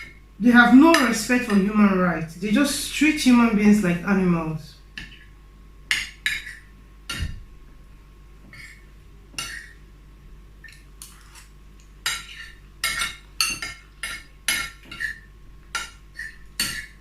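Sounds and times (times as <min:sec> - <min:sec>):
cutlery clinking and scraping plate: 0:10.7 - 0:17.0.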